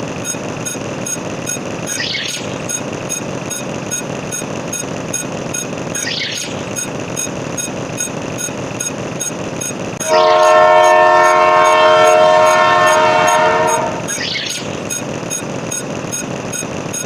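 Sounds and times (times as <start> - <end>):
even ticking: 0.2 - 9.8
horn blowing long chord: 10.0 - 14.2.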